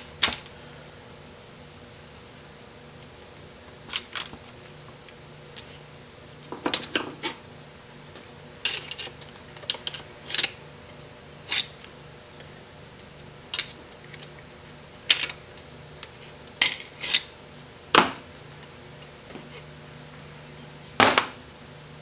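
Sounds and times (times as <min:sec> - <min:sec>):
steady low hum: 0:00.0 - 0:22.0
metal parts and tools clinking: 0:08.6 - 0:10.6, 0:11.4 - 0:11.8, 0:16.6 - 0:17.3.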